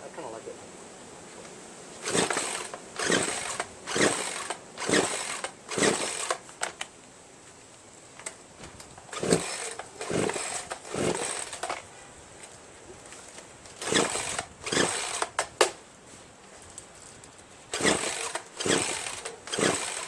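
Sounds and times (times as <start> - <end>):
engine turning over: 2.0 - 6.8, 9.1 - 11.8, 13.8 - 15.5, 17.7 - 20.0
chainsaw recoil starter pulls: 2.0 - 6.9, 8.2 - 11.9, 13.8 - 15.8, 17.7 - 20.0.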